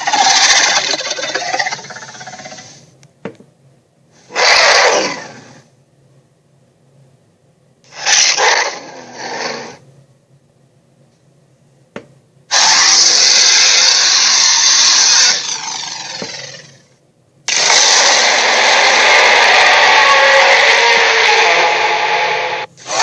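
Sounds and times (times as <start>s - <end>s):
dinosaur roars: 4.3s - 5.6s, 12.5s - 16.9s, 17.5s - 23.0s.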